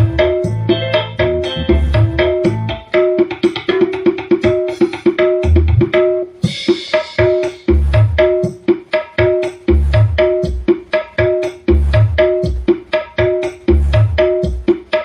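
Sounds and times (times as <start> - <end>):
deep bass hits: 0.0 - 2.8, 7.7 - 8.3
loud drum music over speakers: 0.0 - 15.0.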